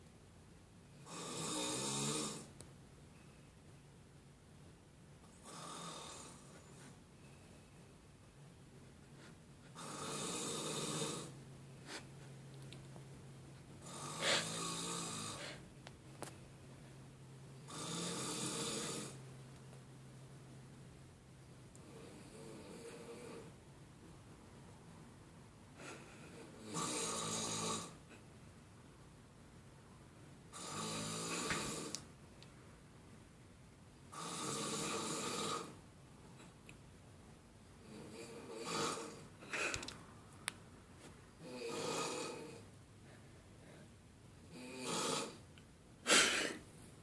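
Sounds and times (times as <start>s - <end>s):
person snoring loudly: 1.0s - 2.5s, 5.4s - 6.5s, 9.8s - 11.4s, 13.8s - 15.6s, 17.7s - 19.2s, 26.4s - 28.0s, 30.5s - 32.0s, 34.1s - 35.8s, 37.9s - 39.3s, 41.4s - 42.6s, 44.5s - 45.4s.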